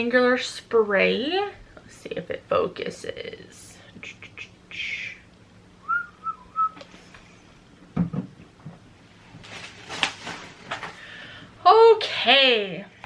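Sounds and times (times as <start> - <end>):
short whistled notes: 5.8 - 6.8.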